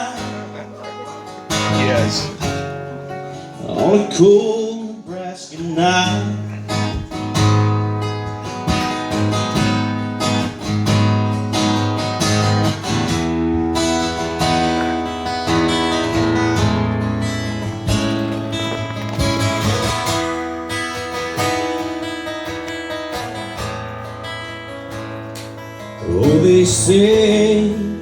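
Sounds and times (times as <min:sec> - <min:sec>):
acoustic guitar strumming: 0:00.0 - 0:28.0.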